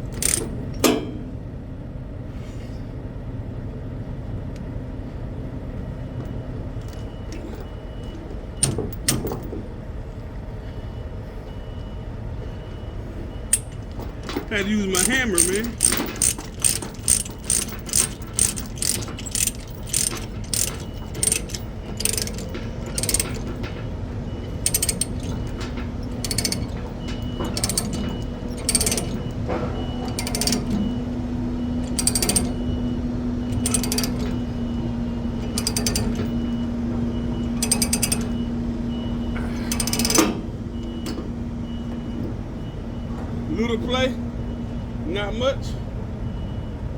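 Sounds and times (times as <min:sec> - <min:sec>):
ratchet pawl clicking: 0:00.0 - 0:00.5, 0:13.5 - 0:23.7, 0:24.5 - 0:29.4, 0:30.1 - 0:30.8, 0:31.8 - 0:32.6, 0:33.5 - 0:34.4, 0:35.4 - 0:36.4, 0:37.6 - 0:38.4, 0:39.7 - 0:40.2.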